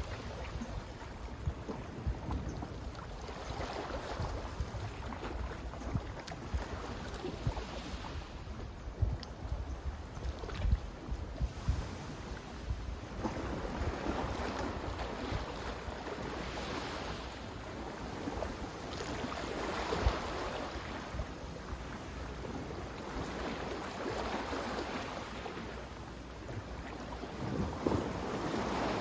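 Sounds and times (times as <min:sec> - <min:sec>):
sea waves washing in: 0:00.0 - 0:02.2, 0:11.4 - 0:29.0
wind rumbling on microphone: 0:00.0 - 0:25.1, 0:26.5 - 0:29.0.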